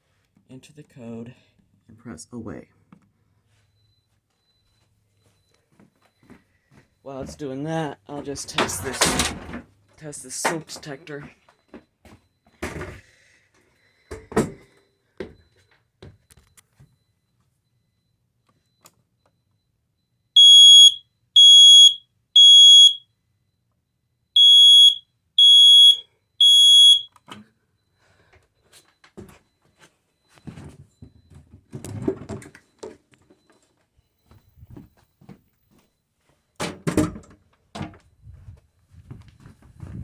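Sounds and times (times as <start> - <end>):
smoke detector high beeps: 20.4 - 23.0, 24.4 - 27.2.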